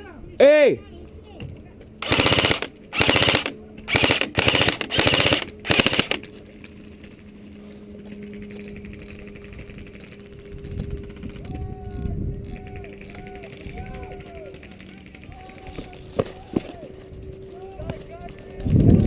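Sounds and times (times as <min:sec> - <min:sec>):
steady hum: 0:01.9 - 0:14.7
airsoft gun full-auto bursts: 0:02.0 - 0:06.3.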